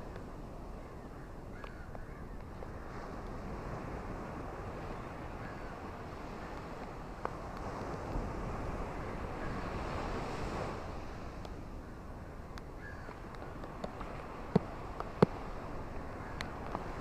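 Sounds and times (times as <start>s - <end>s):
ocean surf washing on shore: 2.4s - 17.0s
bird calls: 12.2s - 13.6s
light ticks: 16.3s - 16.9s.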